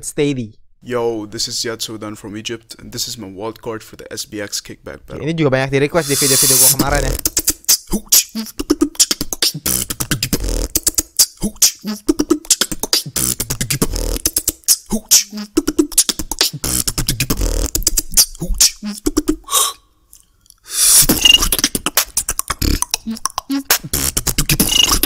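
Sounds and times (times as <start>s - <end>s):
loud hissing burst: 6.0s - 7.1s
beatboxing vocal percussion: 6.0s - 19.8s, 20.7s - 25.0s.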